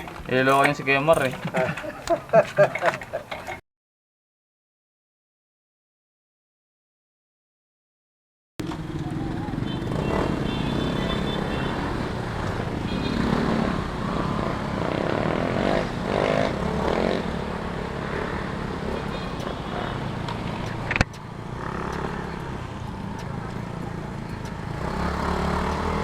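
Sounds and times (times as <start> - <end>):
scooter engine running: 8.6 - 26.0.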